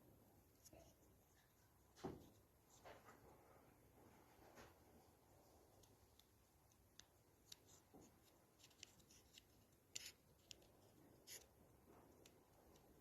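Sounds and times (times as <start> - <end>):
plastic parts clicking and rubbing: 5.7 - 13.0.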